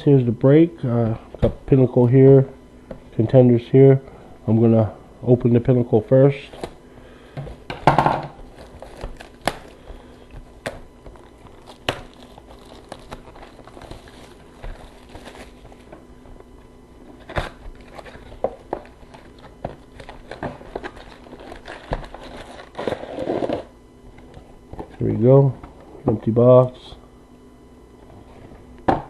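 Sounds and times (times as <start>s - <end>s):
cardboard rustling: 8.4s - 9.8s, 10.4s - 16.4s, 17.0s - 25.0s
plastic wrapping crinkling: 8.4s - 16.0s, 17.2s - 23.7s.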